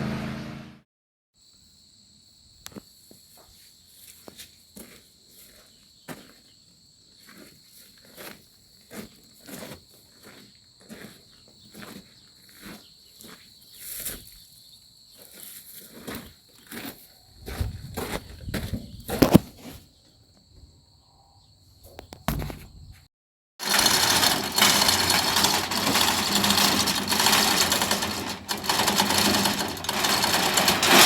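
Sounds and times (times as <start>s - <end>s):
footsteps and scuffs: 15.2s - 19.9s.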